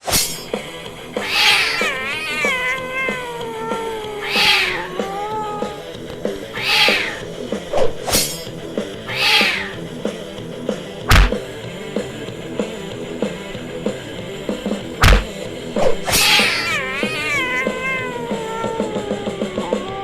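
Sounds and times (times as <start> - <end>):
background music with steady beat: 0.0 - 20.0
cat meowing: 1.2 - 8.1, 9.1 - 9.8, 11.1 - 11.3, 15.0 - 20.0.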